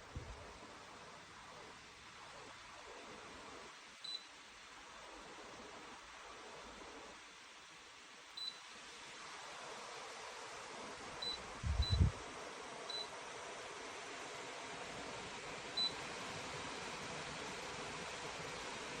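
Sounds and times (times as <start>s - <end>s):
tower fan rushing air: 8.9s - 19.0s.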